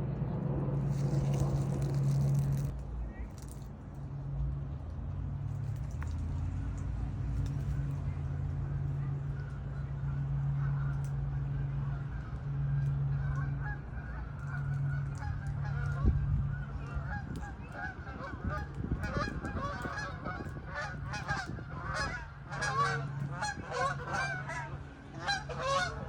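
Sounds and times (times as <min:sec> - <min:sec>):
low hum: 0:00.0 - 0:26.0
geese honking: 0:09.2 - 0:26.0.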